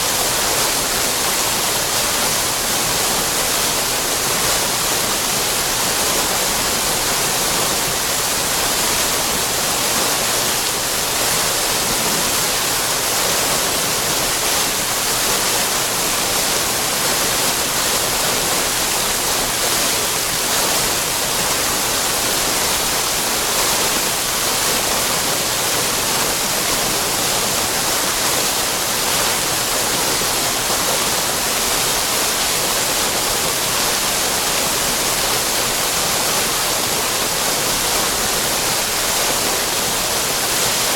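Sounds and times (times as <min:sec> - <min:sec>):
water fountain splashing: 0:00.0 - 0:40.9.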